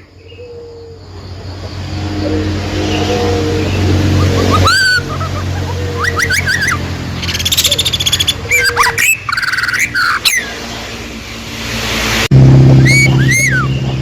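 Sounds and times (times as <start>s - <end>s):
songbird trills and chirps: 0.0s - 10.6s
low hum: 0.0s - 14.0s.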